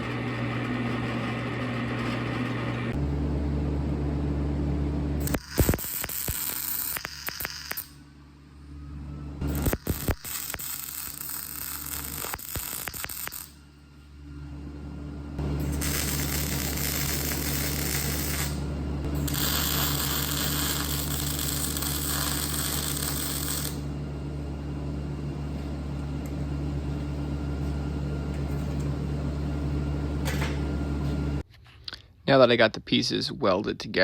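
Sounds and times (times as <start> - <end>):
welder electrical hum: 0.0 - 31.4
welding crackle: 5.2 - 8.0, 9.4 - 13.6, 15.6 - 18.6, 19.2 - 23.8.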